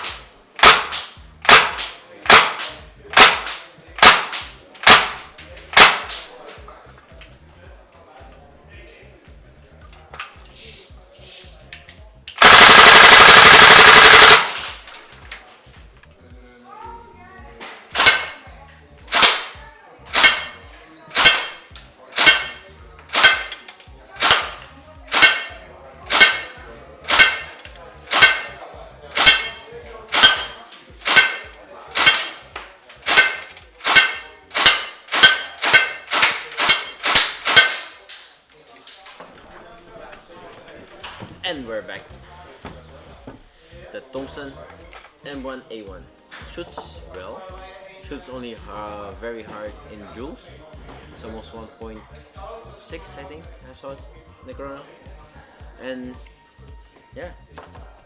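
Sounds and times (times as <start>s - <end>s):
airsoft rifle shots: 0.0s - 6.3s, 12.4s - 15.0s, 18.0s - 18.4s, 19.1s - 20.6s, 21.2s - 32.4s, 33.0s - 38.0s.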